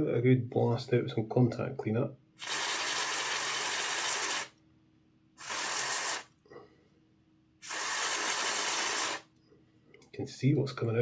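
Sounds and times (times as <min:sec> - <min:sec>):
aerosol spray hissing: 0:02.4 - 0:04.5, 0:05.4 - 0:06.3, 0:07.6 - 0:09.3.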